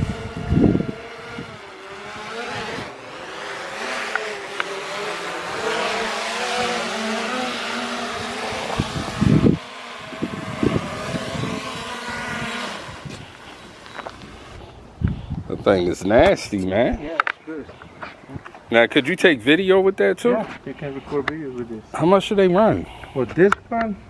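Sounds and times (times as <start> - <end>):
wind gusts on microphone: 0.0 - 3.0, 5.6 - 17.0
drone propellers whining: 0.0 - 15.1.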